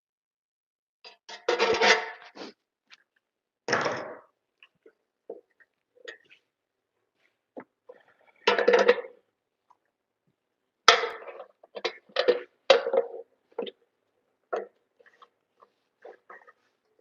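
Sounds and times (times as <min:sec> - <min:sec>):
scraping and knocking on metal box: 0:01.3 - 0:02.3.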